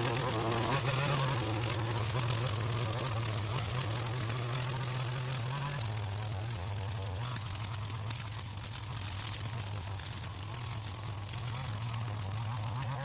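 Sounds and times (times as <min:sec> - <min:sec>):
string trimmer cutting wet grass: 0:00.0 - 0:13.0.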